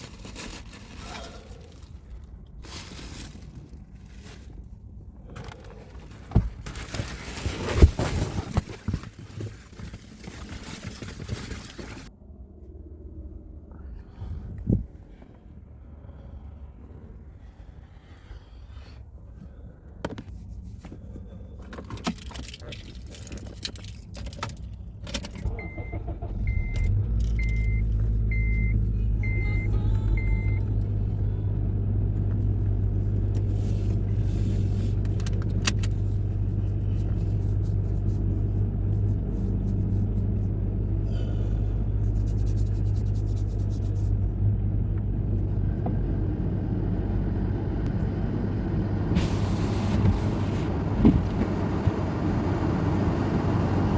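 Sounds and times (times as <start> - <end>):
car engine starting and idling: 21.5 - 53.9
car keys jangling: 21.7 - 26.2, 26.8 - 28.2
car warning chime beeping: 25.5 - 30.8.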